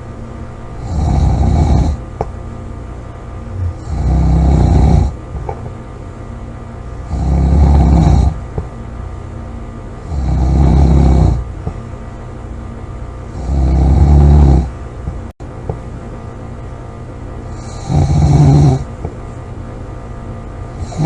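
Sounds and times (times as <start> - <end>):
person snoring loudly: 0.8 - 2.0, 3.5 - 5.2, 7.0 - 8.4, 10.0 - 11.5, 13.3 - 14.7, 17.5 - 18.9, 20.8 - 21.0.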